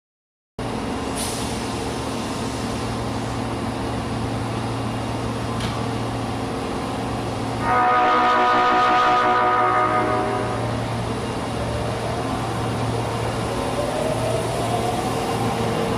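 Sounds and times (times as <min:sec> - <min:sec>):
train low hum: 0:00.6 - 0:15.9
train horn blast: 0:07.6 - 0:10.7.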